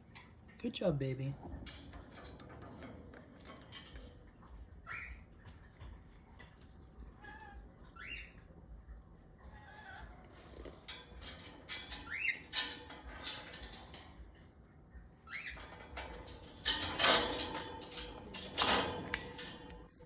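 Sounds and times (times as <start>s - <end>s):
macaw squeaking and chirping: 7.9s - 8.4s.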